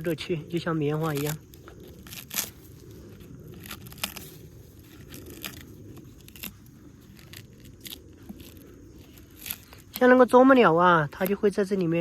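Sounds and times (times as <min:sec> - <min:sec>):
rotten wood crunching and cracking: 0:00.0 - 0:12.0.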